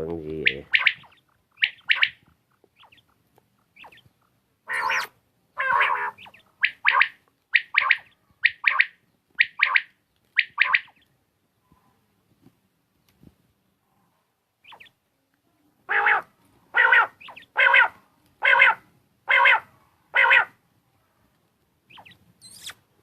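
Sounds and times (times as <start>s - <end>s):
quail calling: 0.3s - 11.1s, 14.6s - 14.9s, 15.9s - 20.6s, 21.9s - 22.8s.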